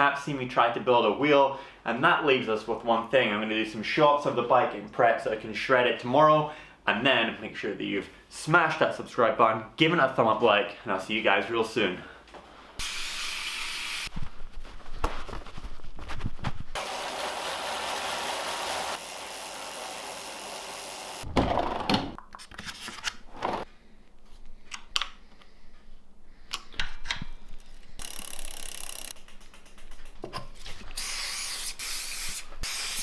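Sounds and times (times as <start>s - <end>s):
aerosol spray hiss: 12.8s - 14.1s, 30.9s - 33.0s.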